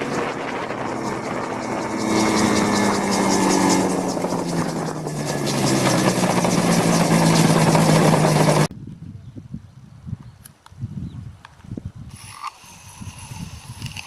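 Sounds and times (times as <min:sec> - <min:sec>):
two-stroke engine and propeller: 0:00.0 - 0:08.7, 0:12.1 - 0:14.0.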